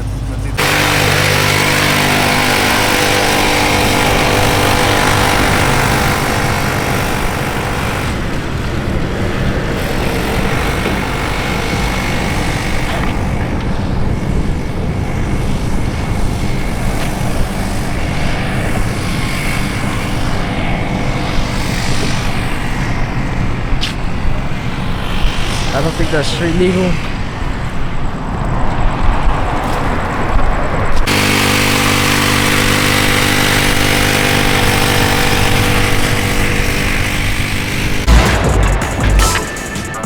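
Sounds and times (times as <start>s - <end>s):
car engine and exhaust running: 0.0s - 28.0s.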